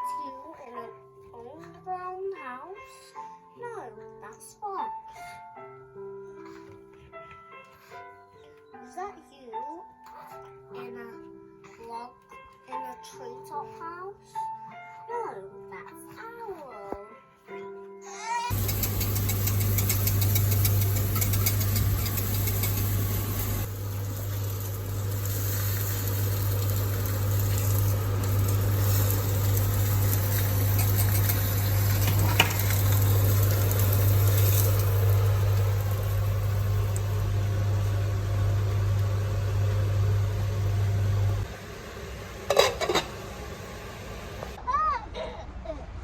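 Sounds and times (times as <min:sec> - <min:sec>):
machine hum with hiss: 0:18.5 - 0:44.6.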